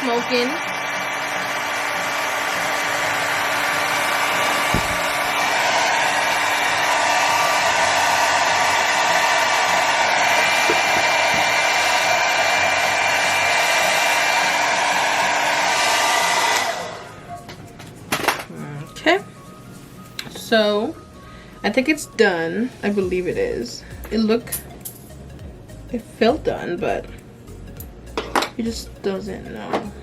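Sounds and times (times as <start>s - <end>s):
hair dryer blowing: 0.0s - 17.4s.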